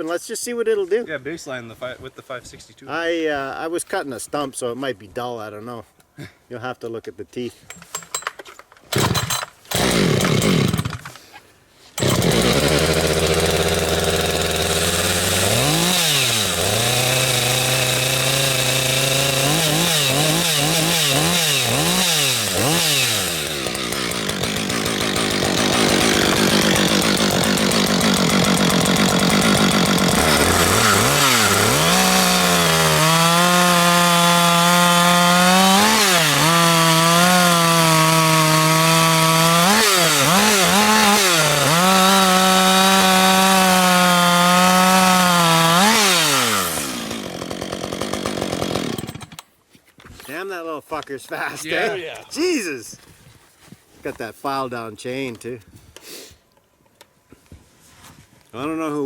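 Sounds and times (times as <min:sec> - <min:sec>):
chainsaw revving: 0:08.9 - 0:11.2, 0:12.0 - 0:49.4
chainsaw cutting log: 0:08.9 - 0:11.3, 0:11.9 - 0:49.5.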